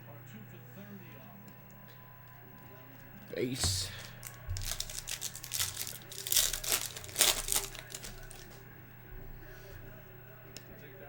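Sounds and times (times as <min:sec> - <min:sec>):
foil wrapper crinkling and tearing: 0:03.7 - 0:08.6.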